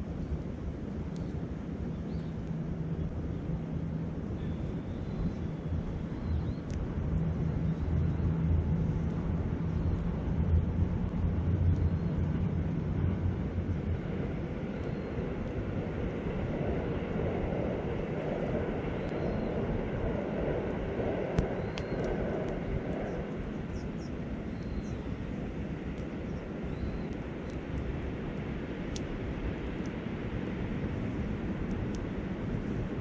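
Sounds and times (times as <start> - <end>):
distant engine drone: 0.0 - 33.0
wind: 0.0 - 33.0
campfire crackling: 21.3 - 33.0.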